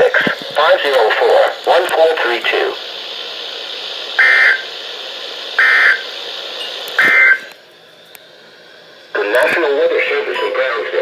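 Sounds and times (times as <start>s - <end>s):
radio hiss: 0.0s - 7.6s, 9.1s - 11.0s
buzzy digital data tones: 4.2s - 4.7s, 5.6s - 6.1s, 6.7s - 7.5s.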